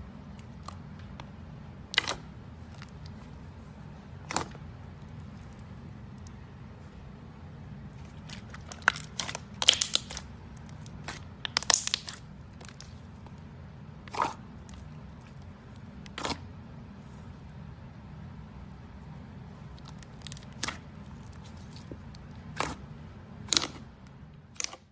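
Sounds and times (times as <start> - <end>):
slime crackling and popping: 8.1 - 13.0, 19.8 - 21.8.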